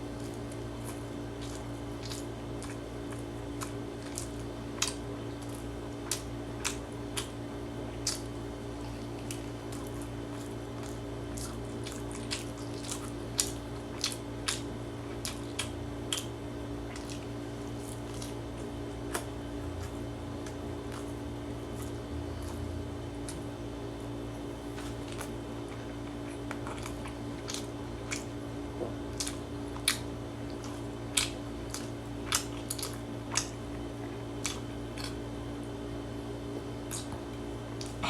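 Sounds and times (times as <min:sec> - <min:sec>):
person chewing food: 0:00.0 - 0:38.0
low hum: 0:17.1 - 0:29.2.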